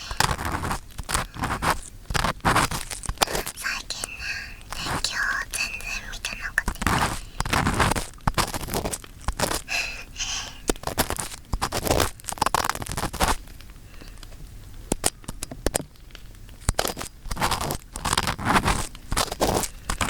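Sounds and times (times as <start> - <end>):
earpick scraping inside ear: 0.0 - 5.0.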